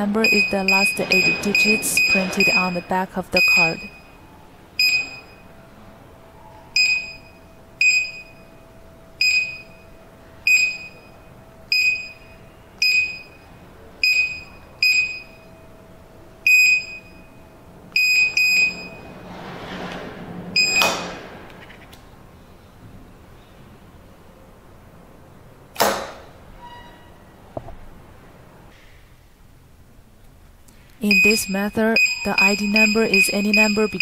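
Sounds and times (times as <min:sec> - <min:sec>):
keypad buzzer beeps: 0:00.0 - 0:04.2, 0:04.8 - 0:05.4, 0:06.8 - 0:08.5, 0:09.2 - 0:09.9, 0:10.5 - 0:15.5, 0:16.5 - 0:17.3, 0:18.0 - 0:19.0, 0:31.0 - 0:34.0.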